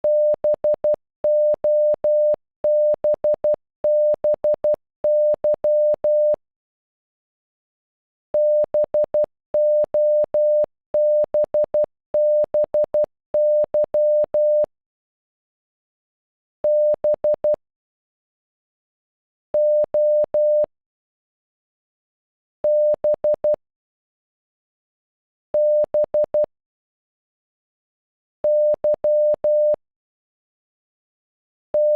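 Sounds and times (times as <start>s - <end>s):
morse code beeps: 0.1s - 6.4s, 8.4s - 14.7s, 16.7s - 17.6s, 19.6s - 20.7s, 22.7s - 23.6s, 25.6s - 26.5s, 28.5s - 29.8s.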